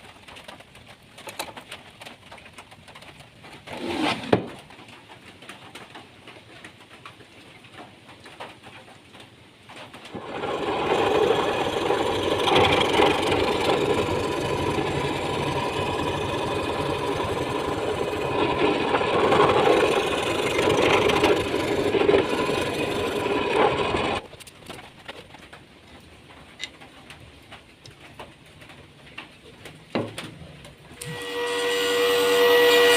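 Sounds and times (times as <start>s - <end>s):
electric drum sander sanding wood: 10.1s - 24.2s.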